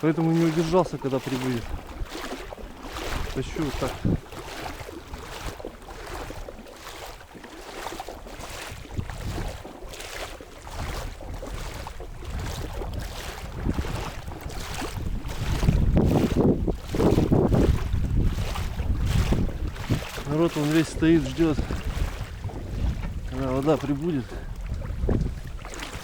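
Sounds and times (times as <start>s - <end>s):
wind on microphone: 0.0s - 7.2s, 8.2s - 26.0s
boat hull scraping on beach: 0.0s - 26.0s.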